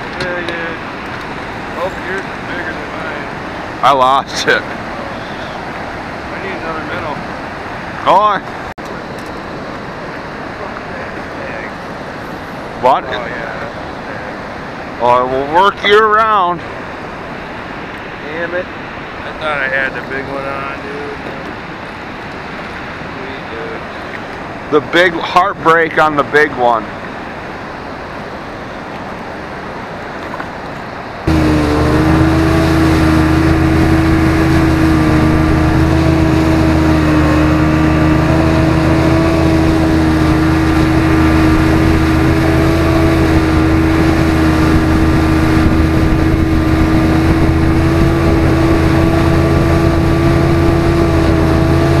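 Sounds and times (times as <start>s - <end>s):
outboard motor running: 0.0s - 16.4s, 31.2s - 52.0s.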